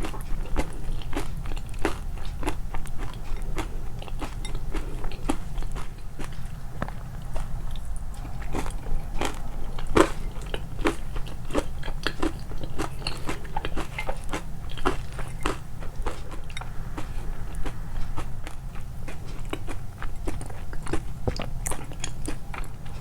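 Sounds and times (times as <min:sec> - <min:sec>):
chewing crunchy food: 0:00.0 - 0:23.0.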